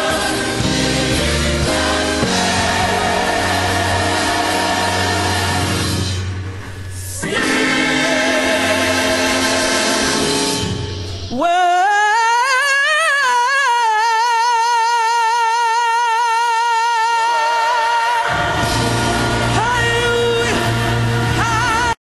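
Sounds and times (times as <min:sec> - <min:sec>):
band and choir chord: 0:00.0 - 0:11.7, 0:17.3 - 0:22.0.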